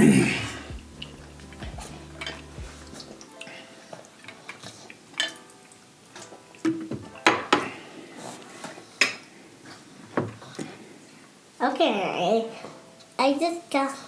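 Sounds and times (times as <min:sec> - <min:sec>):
chewing: 0:00.0 - 0:06.6
dishes and cutlery clicking: 0:04.2 - 0:05.6.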